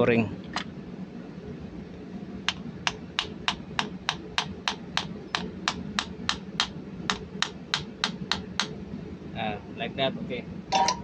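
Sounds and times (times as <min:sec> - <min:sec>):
steady low hum: 0:00.0 - 0:11.0
sharp hand tool clicks: 0:02.5 - 0:08.7.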